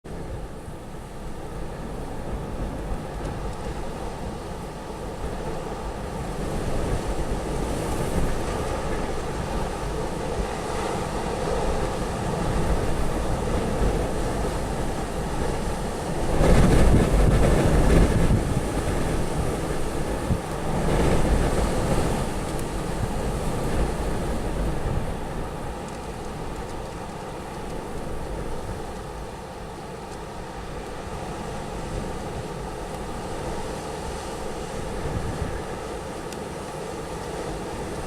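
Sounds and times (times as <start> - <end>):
storm wind buffeting microphone: 0.1 - 38.0.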